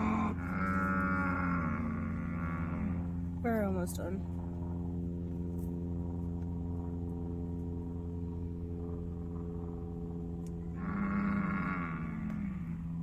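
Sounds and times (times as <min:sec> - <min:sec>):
cow bawling: 0:00.0 - 0:03.1, 0:10.7 - 0:13.0
car engine idling hum: 0:00.0 - 0:13.0.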